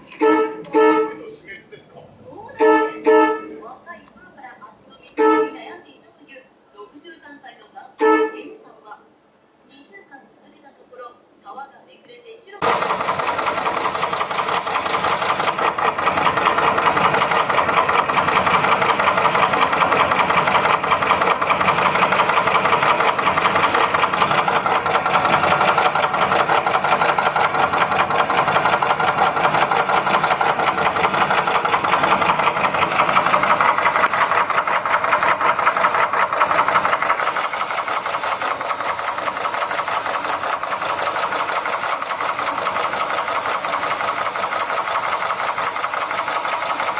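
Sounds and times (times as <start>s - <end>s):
fast even engine ticking: 12.6s - 46.9s.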